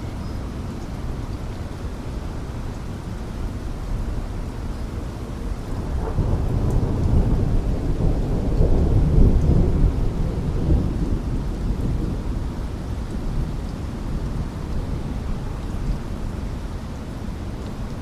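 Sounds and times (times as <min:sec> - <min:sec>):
steady rain: 0:00.0 - 0:18.0
thunder rumbling: 0:05.3 - 0:16.6.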